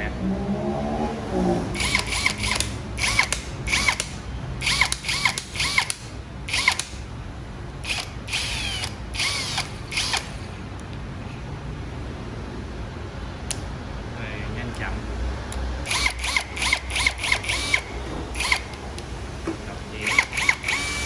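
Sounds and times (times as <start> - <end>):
cordless drill motor whining: 1.8 - 7.0, 7.8 - 10.5, 15.9 - 18.8, 20.0 - 21.0.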